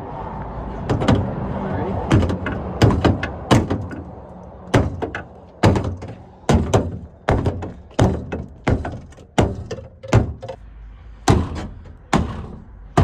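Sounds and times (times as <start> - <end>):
knocks on car body metal: 0.9 - 1.3, 2.1 - 4.1, 4.7 - 10.6, 11.3 - 13.0.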